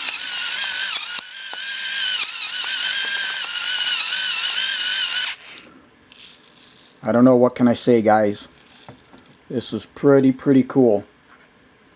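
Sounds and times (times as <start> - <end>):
pepper mill motor whining: 0.0 - 5.7.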